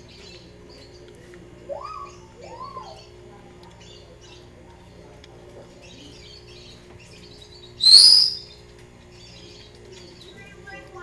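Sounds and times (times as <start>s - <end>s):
bird chirping faintly: 5.8s - 10.4s
bird shrill whistle: 7.8s - 8.5s.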